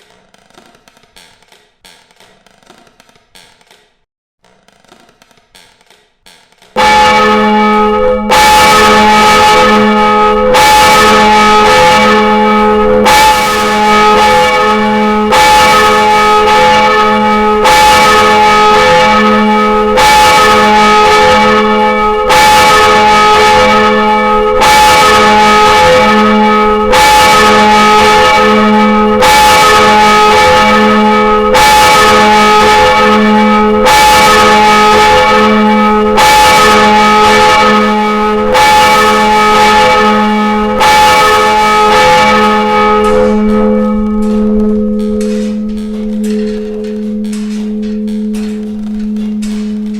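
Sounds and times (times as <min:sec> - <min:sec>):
church bell ringing: 0:06.8 - 0:49.9.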